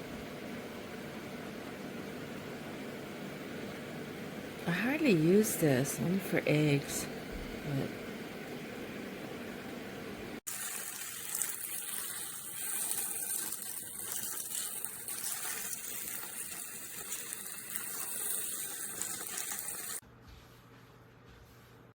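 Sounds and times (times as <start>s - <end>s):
water running from a tap: 10.5s - 20.0s.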